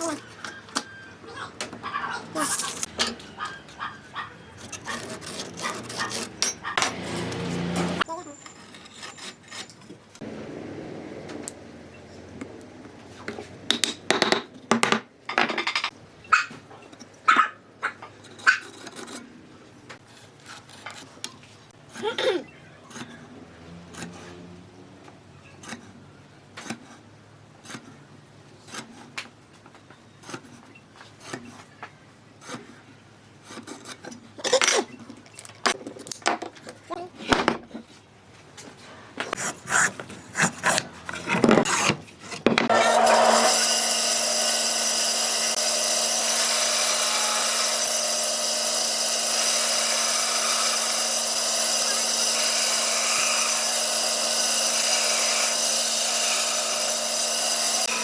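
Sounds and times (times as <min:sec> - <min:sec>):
sawing strokes on wood: 0:02.4 - 0:09.7, 0:42.7 - 0:58.0
electric power tool humming: 0:42.7 - 0:58.0.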